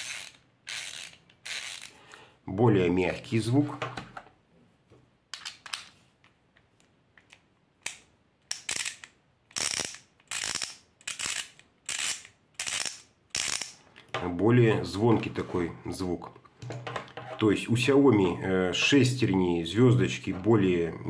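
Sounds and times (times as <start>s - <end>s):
ratchet screwdriver clicking: 0.0s - 1.9s, 7.8s - 13.8s.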